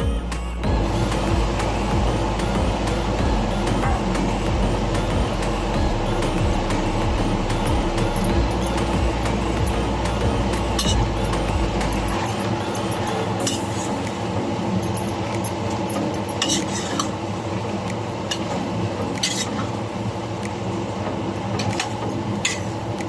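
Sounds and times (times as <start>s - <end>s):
utensil stirring and scraping a pan: 16.4s - 17.1s.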